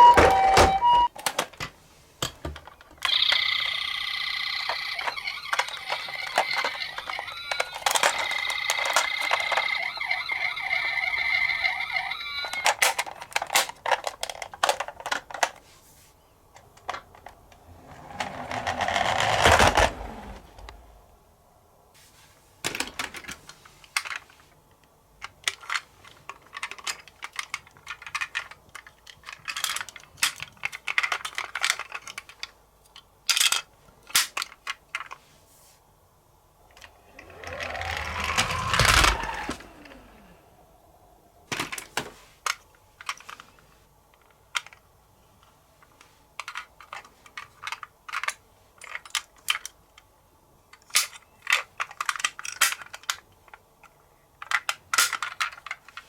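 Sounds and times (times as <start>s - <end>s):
toy car rolling rumble: 2.6s - 15.6s, 16.6s - 21.1s, 36.6s - 43.6s
light plastic clicks and clacks: 41.5s - 50.1s.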